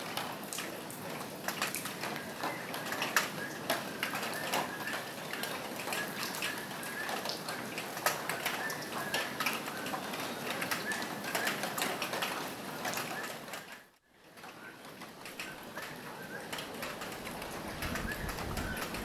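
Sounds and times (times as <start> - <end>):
rain on a roof: 0.0 - 19.0
raindrops tapping: 15.3 - 19.0.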